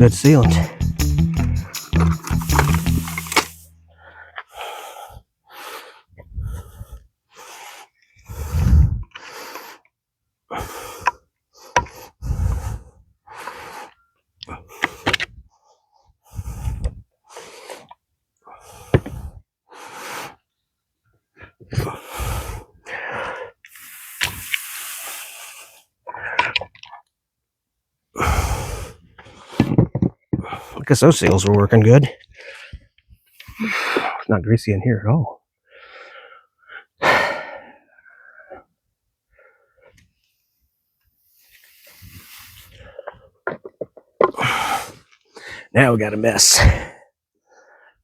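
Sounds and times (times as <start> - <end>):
straining breaths: 0.3 - 20.6, 21.4 - 26.6, 28.2 - 29.7, 32.2 - 34.3, 35.6 - 45.7.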